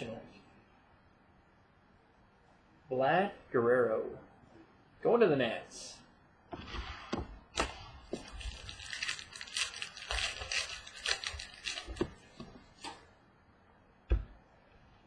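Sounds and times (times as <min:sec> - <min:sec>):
cards and packaging rustling: 0:07.6 - 0:13.0.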